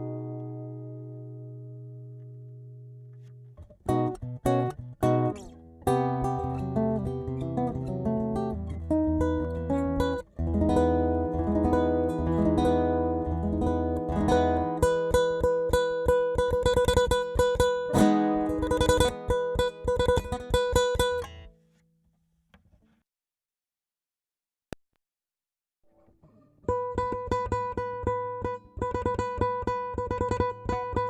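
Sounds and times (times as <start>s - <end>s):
acoustic guitar playing: 0.0s - 21.6s, 25.9s - 31.0s.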